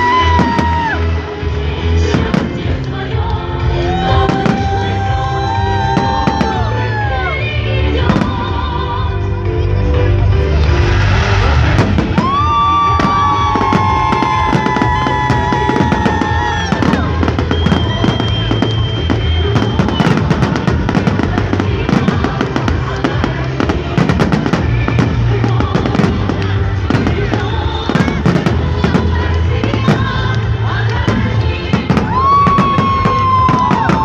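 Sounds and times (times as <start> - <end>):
fireworks bangs and crackles: 0.0 - 9.0, 10.5 - 34.0
music playing: 0.0 - 34.0.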